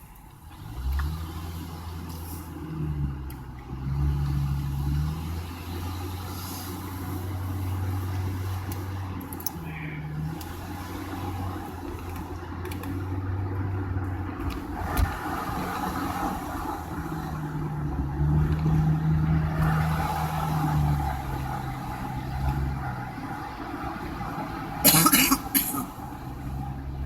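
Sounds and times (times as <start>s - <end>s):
car engine hum: 0.0s - 27.0s
tyre noise: 24.8s - 26.0s.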